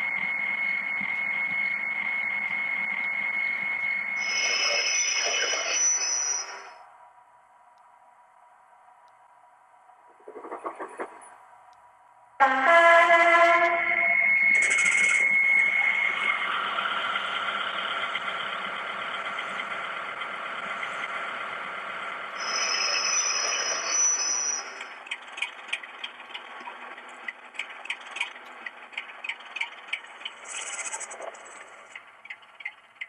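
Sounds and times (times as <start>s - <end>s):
high whistle-like squeal: 0.0s - 6.9s, 12.4s - 18.7s, 22.4s - 25.0s
diesel engine running: 14.6s - 24.0s.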